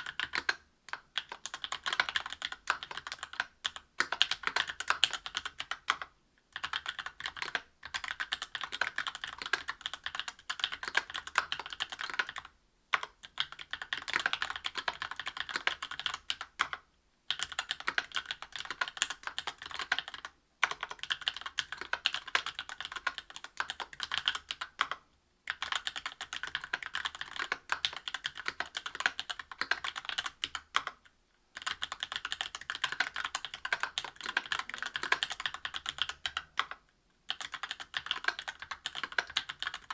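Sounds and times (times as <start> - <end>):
mechanical keyboard typing: 0.0 - 31.0, 31.6 - 39.9.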